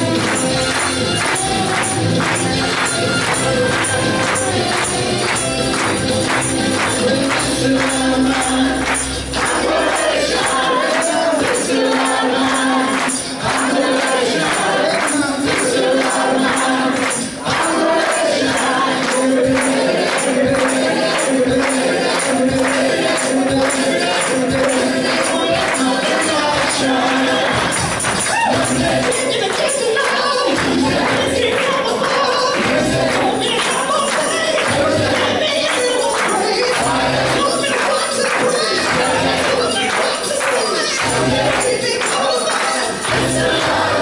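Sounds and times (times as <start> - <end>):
instrumental backing: 0.0 - 29.6
group of voices singing: 0.0 - 44.0
tambourine beat: 0.0 - 44.0.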